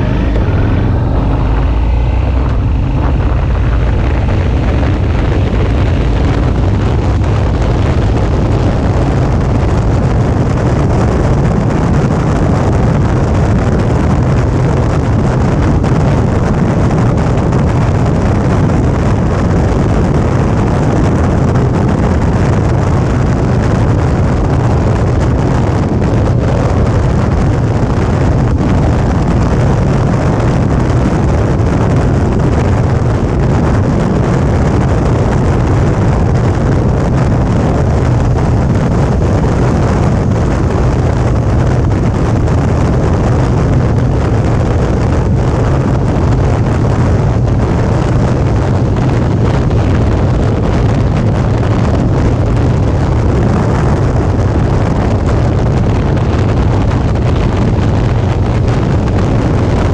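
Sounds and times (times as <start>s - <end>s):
motorcycle engine cruising: 0.0s - 59.9s
wind rushing over microphone: 0.0s - 59.9s.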